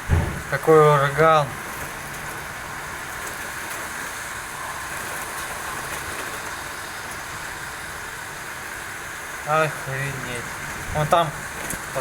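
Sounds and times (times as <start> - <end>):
strong wind: 0.0 - 0.7
heavy rain: 0.0 - 12.0.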